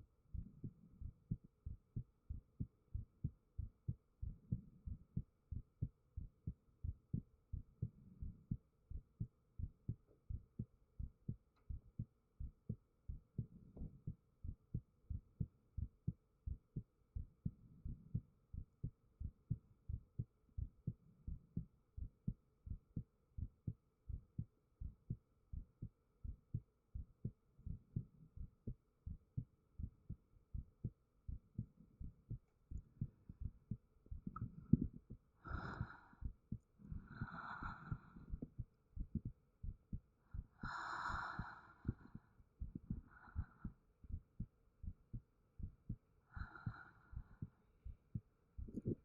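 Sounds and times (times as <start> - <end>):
heartbeat thumps: 0.0 - 49.0.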